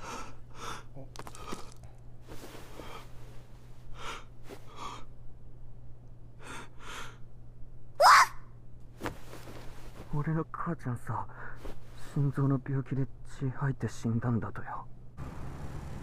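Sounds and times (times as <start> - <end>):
person breathing: 0.0 - 5.1, 6.4 - 7.2
steady low hum: 0.0 - 16.0.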